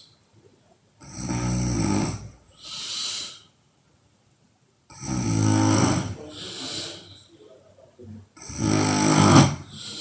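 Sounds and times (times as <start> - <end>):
breathy hiss of air: 0.0 - 0.3, 1.8 - 3.6, 5.0 - 7.4, 8.4 - 10.0
woman snoring: 4.9 - 6.2, 8.4 - 9.8.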